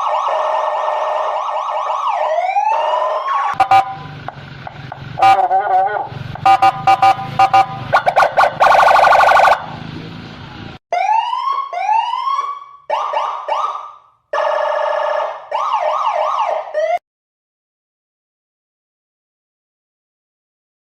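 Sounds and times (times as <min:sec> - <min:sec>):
electronic siren cycling tones: 0:00.0 - 0:04.3, 0:06.4 - 0:09.7.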